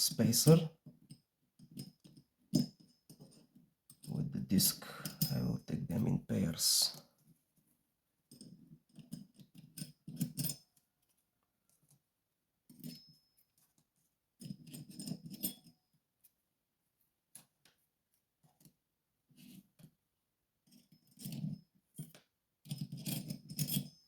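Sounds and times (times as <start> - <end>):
metal lock parts clinking: 1.6 - 5.6, 8.4 - 10.8, 22.7 - 24.0.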